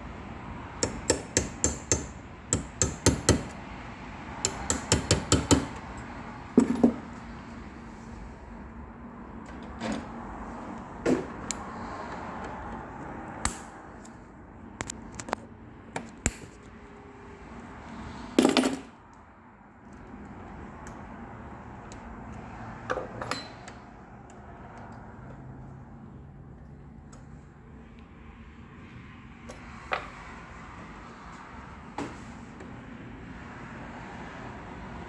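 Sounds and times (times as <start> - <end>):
hand tools clicking on metal: 4.5 - 5.8.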